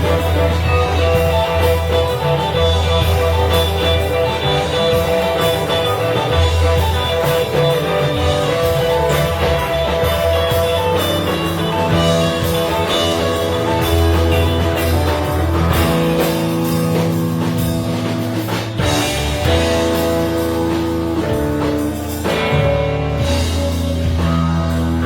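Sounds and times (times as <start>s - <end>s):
bass guitar: 0.0s - 25.0s
drum kit: 0.0s - 25.0s
electric guitar lines: 0.0s - 25.0s.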